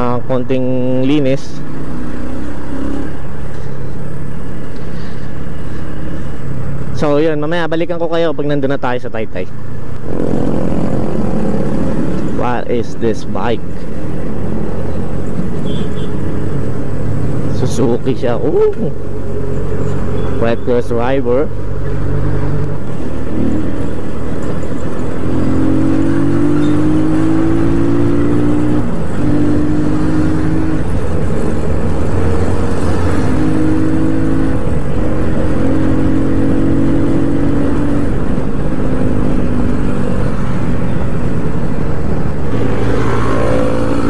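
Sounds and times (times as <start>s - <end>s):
motorcycle engine shifting gears: 21.6s - 44.0s.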